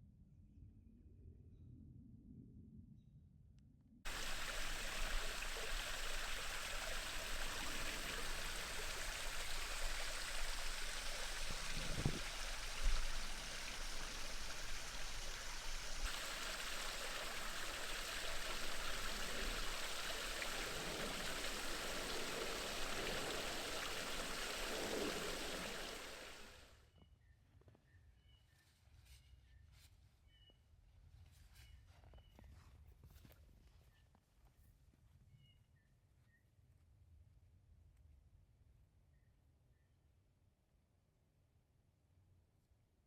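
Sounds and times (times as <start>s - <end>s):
running water rushing: 4.1s - 26.8s.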